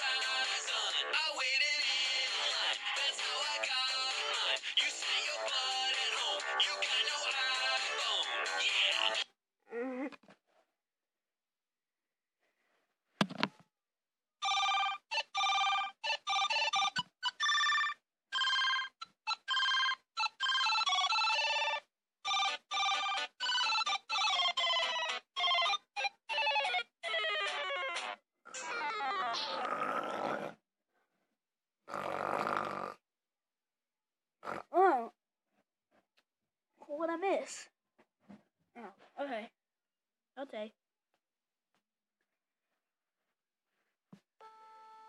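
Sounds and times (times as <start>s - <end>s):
phone ringtone melody: 14.4s - 27.3s.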